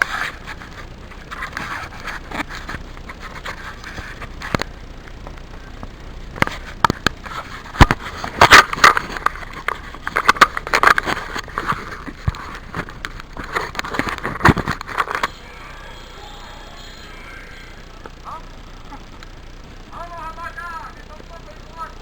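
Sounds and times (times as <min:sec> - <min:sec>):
gear clicking: 0:00.0 - 0:15.7
scraping crunches: 0:00.0 - 0:16.0.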